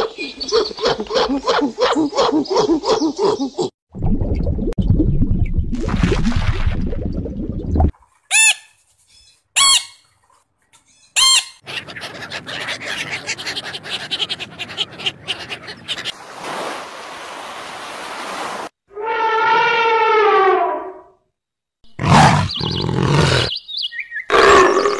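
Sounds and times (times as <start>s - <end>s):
high animal squeaks: 9.6s - 10.0s, 11.1s - 16.0s
fast animal chattering: 11.6s - 16.1s.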